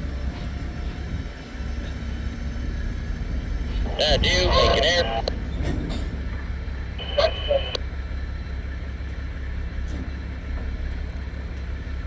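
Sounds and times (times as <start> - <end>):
low engine rumble: 3.3 - 12.0
scanner radio chatter: 3.7 - 5.4, 6.9 - 7.8.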